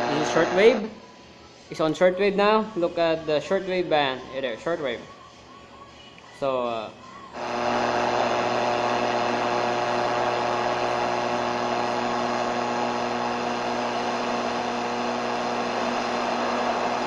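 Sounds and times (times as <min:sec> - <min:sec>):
radio static hiss: 0:00.0 - 0:01.0
buzzing hum of steady tones: 0:07.2 - 0:17.0.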